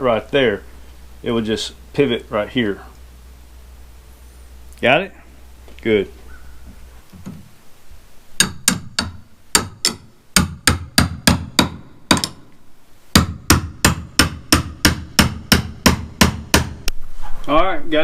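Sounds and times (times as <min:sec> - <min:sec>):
hammer blows ringing: 0:13.2 - 0:16.8.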